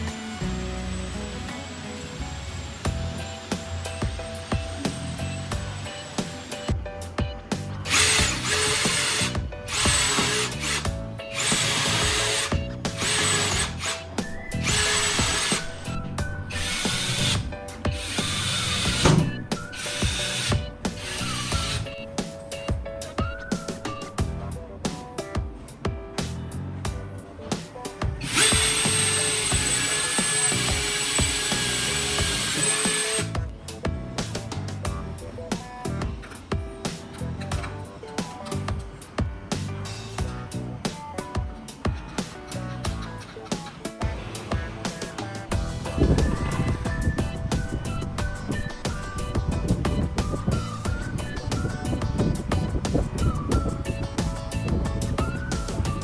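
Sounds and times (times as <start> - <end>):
electric power tool whining: 0.0 - 6.8, 7.7 - 22.1, 28.2 - 33.4
background music: 0.0 - 56.0.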